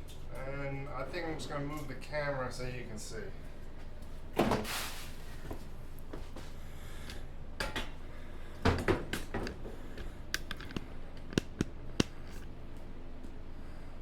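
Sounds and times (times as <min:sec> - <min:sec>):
camera handling clicks and knocks: 0:10.4 - 0:12.5.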